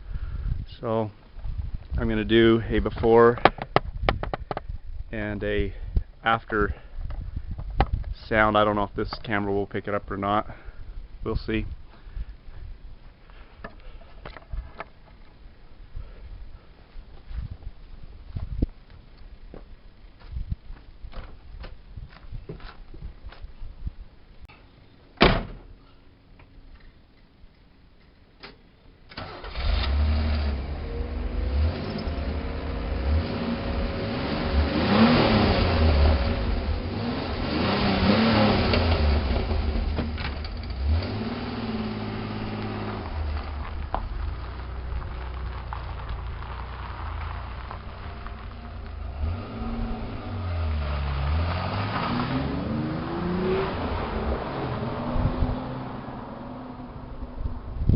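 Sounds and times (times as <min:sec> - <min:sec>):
car engine starting and idling: 0:28.4 - 0:57.8
engine revving: 0:29.2 - 0:43.5, 0:48.3 - 0:57.0.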